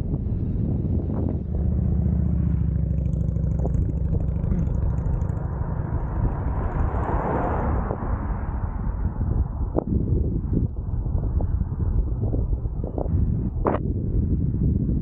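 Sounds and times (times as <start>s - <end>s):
steady low rumble: 0.0s - 15.0s
car driving past: 1.2s - 9.8s.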